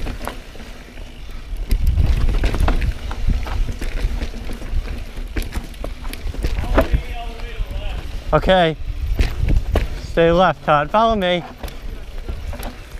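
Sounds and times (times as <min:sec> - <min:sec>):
bike clattering over rocky ground: 0:00.0 - 0:08.2, 0:09.0 - 0:12.9
wind buffeting microphone: 0:01.2 - 0:12.9.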